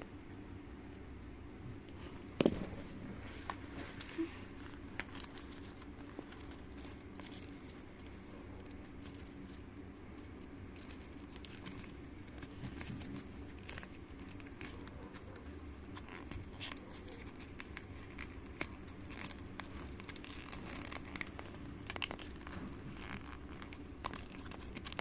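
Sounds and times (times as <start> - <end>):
low steady hum: 0.0 - 25.0
paper crinkling and creasing: 3.1 - 25.0.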